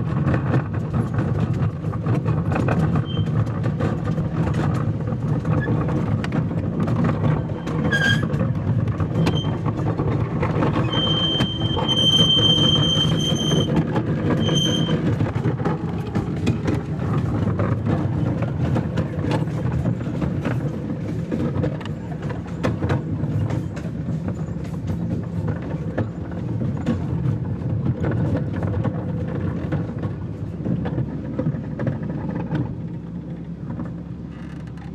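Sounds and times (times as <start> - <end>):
small train rumbling along track: 0.0 - 34.9
wheels clicking: 0.0 - 34.9
high steady squealing tone: 7.6 - 8.4, 10.7 - 15.1.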